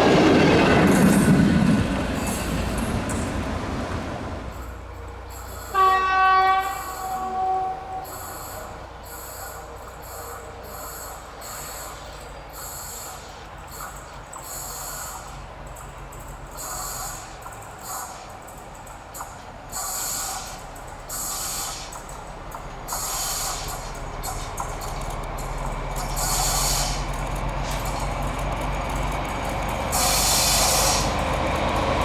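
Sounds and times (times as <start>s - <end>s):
low rumble of passing train: 0.0s - 32.0s
locomotive horn blast: 5.6s - 8.7s.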